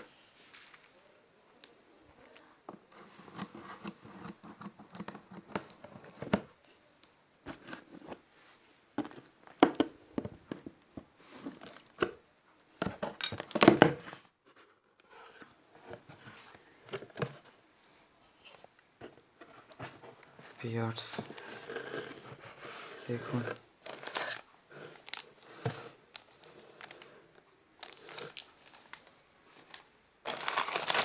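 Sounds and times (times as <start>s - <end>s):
packaging crinkling and tearing: 13.2s - 13.7s, 23.1s - 25.5s, 26.1s - 27.1s, 27.8s - 29.1s, 29.7s - 31.0s.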